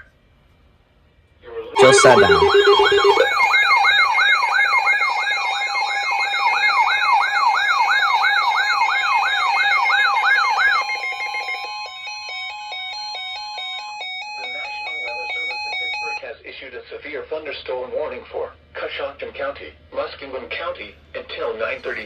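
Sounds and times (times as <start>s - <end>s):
quick stepped beeping: 1.8s - 3.4s
steady alert tone: 1.8s - 3.5s
electronic wailing siren alarm: 1.8s - 3.6s.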